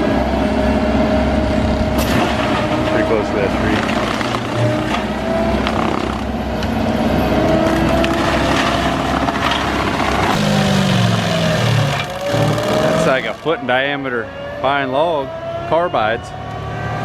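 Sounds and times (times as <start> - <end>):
mulcher grinding wood: 1.2 - 13.9
wood cracking: 1.4 - 6.4, 7.4 - 13.7.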